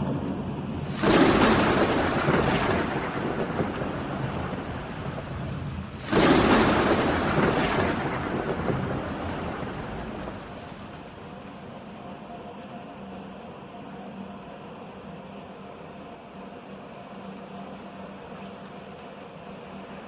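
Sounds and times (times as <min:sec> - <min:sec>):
rolling thunderclaps: 0:00.7 - 0:11.8
steady rain: 0:00.7 - 0:12.2.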